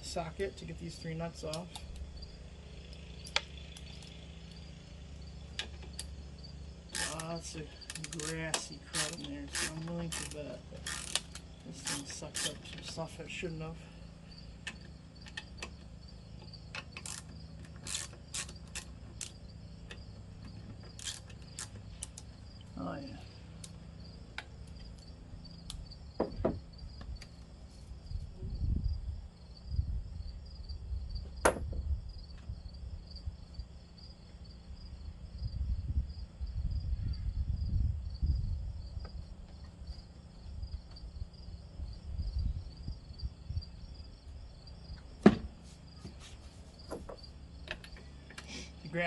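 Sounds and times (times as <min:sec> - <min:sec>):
crickets chirping: 0:00.0 - 0:49.0
low rumbling handling noise: 0:00.0 - 0:49.0
sharp clicks and knocks: 0:02.9 - 0:04.6, 0:05.5 - 0:06.2, 0:06.9 - 0:13.0, 0:14.6 - 0:22.3, 0:44.9 - 0:46.2, 0:46.8 - 0:48.5.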